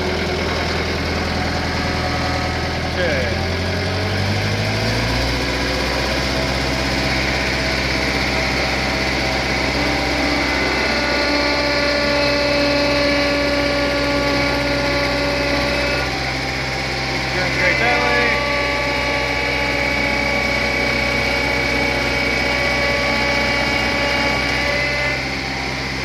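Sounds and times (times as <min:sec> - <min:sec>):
diesel engine running: 0:00.0 - 0:26.0
hydraulic whine: 0:00.0 - 0:26.0.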